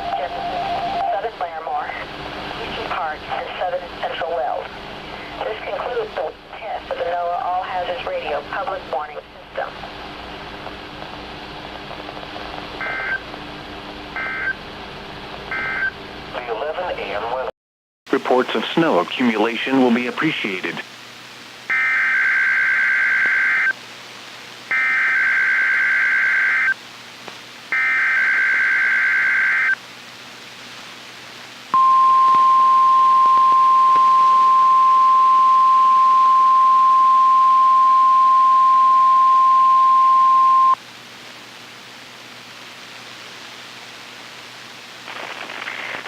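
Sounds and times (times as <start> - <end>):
radio hiss: 0.0 - 13.4, 15.6 - 17.5, 18.1 - 46.0
steady warning alarm tone: 24.7 - 26.8.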